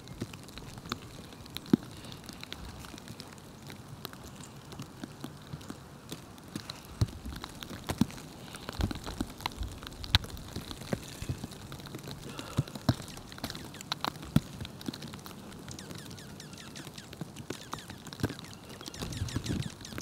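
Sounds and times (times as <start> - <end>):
faint high bird chirps: 15.7 - 20.0.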